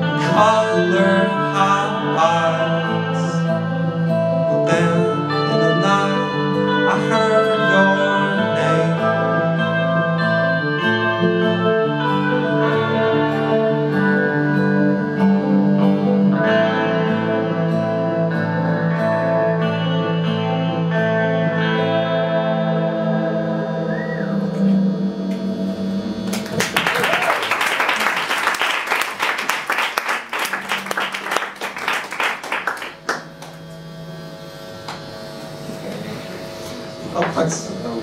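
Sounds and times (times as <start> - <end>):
audience applause: 26.3 - 33.6.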